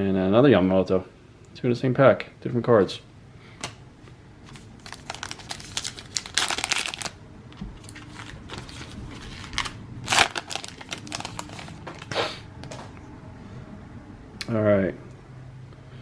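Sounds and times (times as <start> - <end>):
cards rustling and clicking: 4.4 - 13.0.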